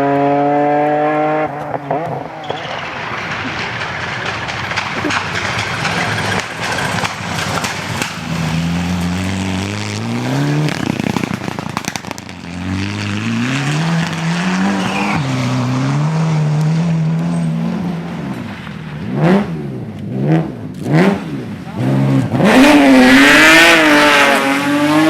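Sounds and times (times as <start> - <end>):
rally car engine accelerating: 0.0 - 25.0
rush of tyre noise: 0.0 - 25.0.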